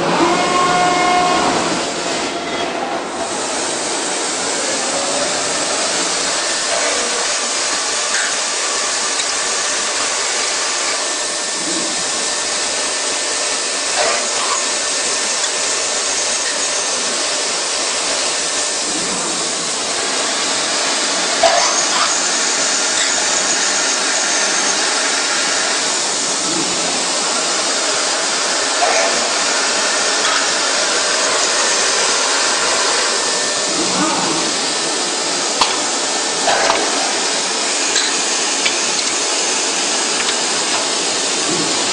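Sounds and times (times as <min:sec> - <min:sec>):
machine hiss with steady tones: 0:00.0 - 0:41.9.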